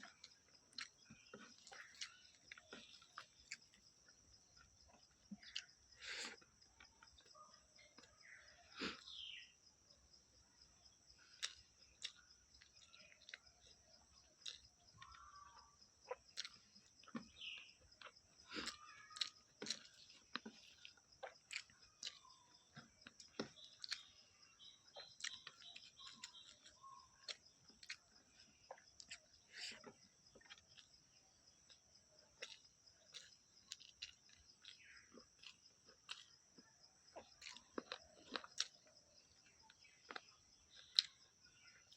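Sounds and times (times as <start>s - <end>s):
chewing mouth smacks: 11.4s - 13.5s, 32.4s - 36.3s.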